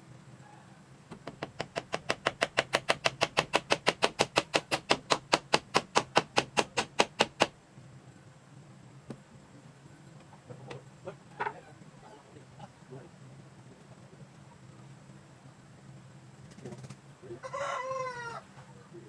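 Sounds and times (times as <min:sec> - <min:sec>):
rapid hand tool blows: 0:01.3 - 0:07.5.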